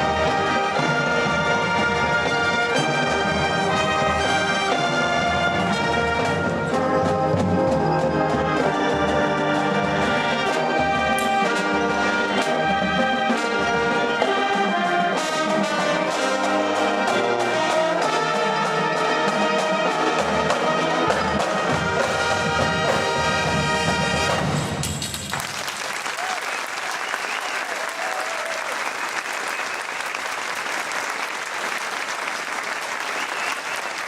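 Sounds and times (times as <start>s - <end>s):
trumpets and trombones: 0.0s - 24.8s
marching band playing: 0.0s - 25.6s.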